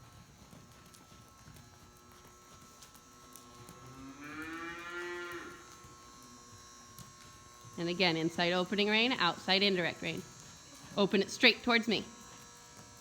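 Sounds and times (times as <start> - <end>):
cow mooing: 3.9 - 5.6.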